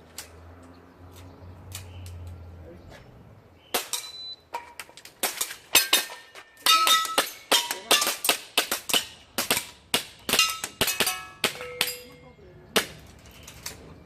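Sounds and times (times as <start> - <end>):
shot timer beep: 4.1 - 4.4.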